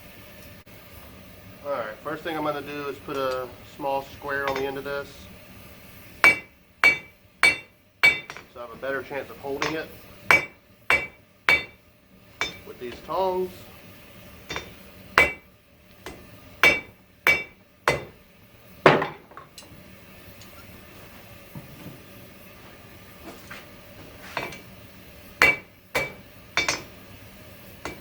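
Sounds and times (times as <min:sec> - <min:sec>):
hammer striking steel on anvil: 0:04.4 - 0:04.8, 0:06.2 - 0:08.6, 0:09.5 - 0:11.8, 0:12.4 - 0:13.1, 0:14.5 - 0:18.2, 0:24.4 - 0:24.7, 0:25.4 - 0:27.0, 0:27.8 - 0:28.0.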